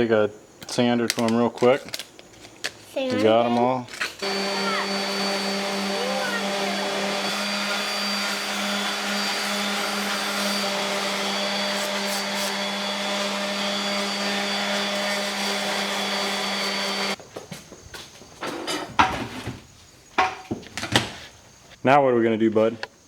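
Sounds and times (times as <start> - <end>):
electric sander running: 4.2 - 17.2.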